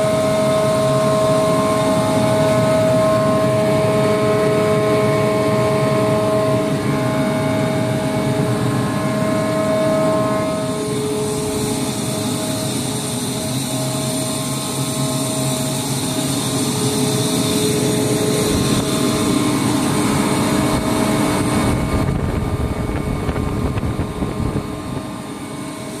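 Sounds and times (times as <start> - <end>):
air compressor running: 0.0 - 26.0.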